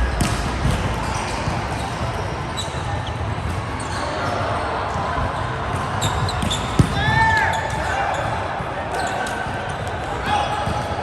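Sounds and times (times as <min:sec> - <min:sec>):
murmur of sports hall: 0:00.0 - 0:11.0
shoe squeaks: 0:01.0 - 0:03.2, 0:06.0 - 0:09.4.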